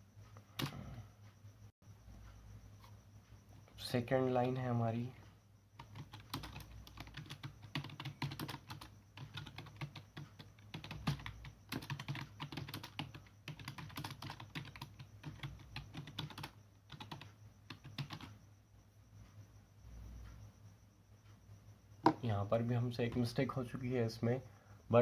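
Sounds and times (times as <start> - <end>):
typing on computer keyboard: 0.6 - 1.0, 5.8 - 18.4.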